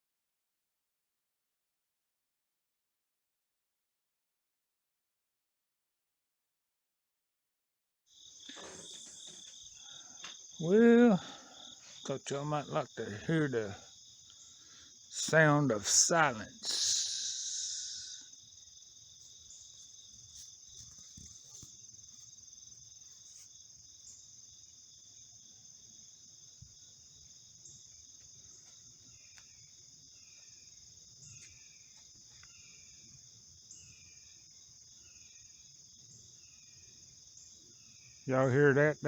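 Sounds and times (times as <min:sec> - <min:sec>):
crickets trilling: 0:08.1 - 0:39.0.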